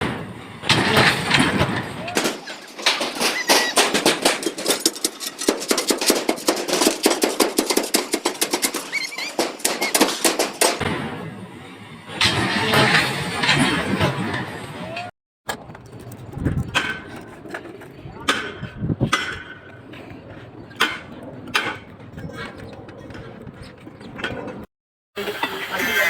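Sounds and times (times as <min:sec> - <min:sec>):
hammering on formwork: 0:02.2 - 0:10.8, 0:18.3 - 0:19.7.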